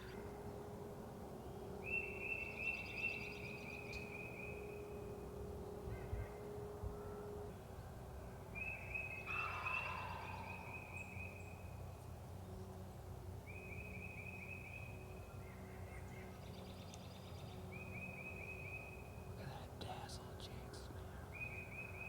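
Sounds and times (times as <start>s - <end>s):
turkey gobbling: 9.3s - 10.6s.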